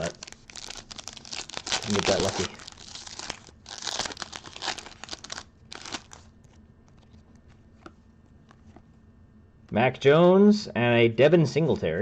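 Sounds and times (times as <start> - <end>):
plastic wrapper crinkling: 0.0 - 7.9
cards being shuffled: 0.0 - 9.0.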